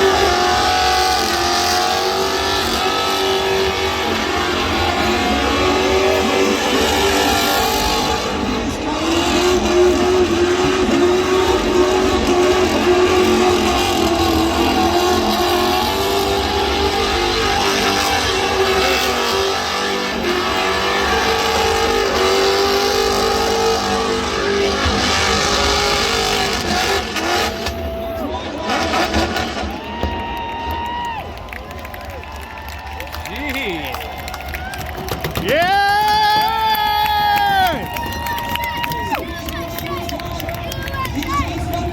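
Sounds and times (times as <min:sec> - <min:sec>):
car engine at high revs: 0:00.0 - 0:30.4.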